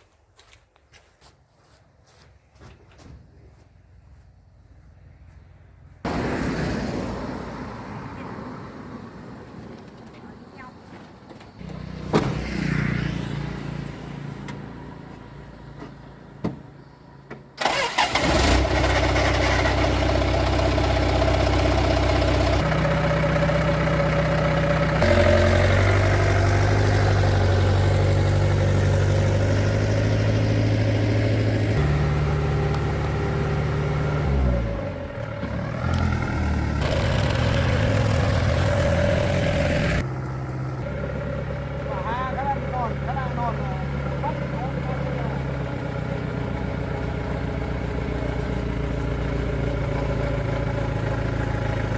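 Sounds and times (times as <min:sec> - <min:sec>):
truck engine starting and running: 0:03.9 - 0:51.9.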